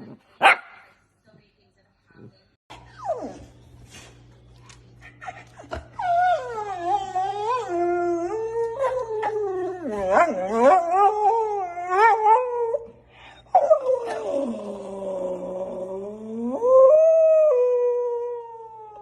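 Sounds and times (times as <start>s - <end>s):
dog howling: 6.0s - 12.9s.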